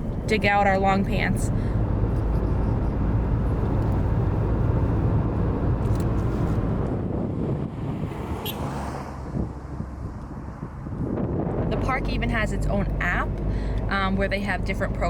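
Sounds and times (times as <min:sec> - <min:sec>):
car interior road rumble: 0:00.0 - 0:15.0.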